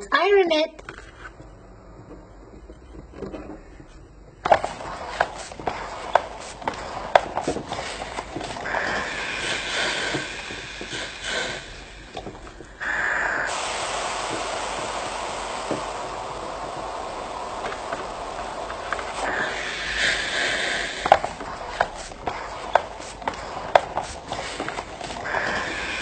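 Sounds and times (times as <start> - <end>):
steady hissing: 3.5 - 26.0
plastic toys clicking and tapping: 4.4 - 9.0, 21.0 - 25.8.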